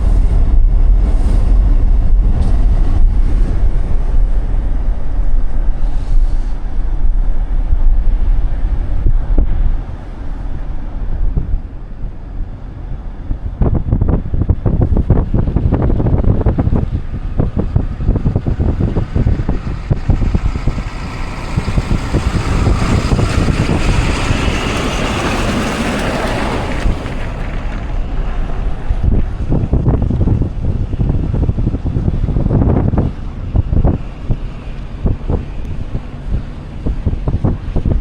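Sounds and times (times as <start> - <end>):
car driving rumble: 0.0 - 38.0
wind buffeting microphone: 0.0 - 38.0.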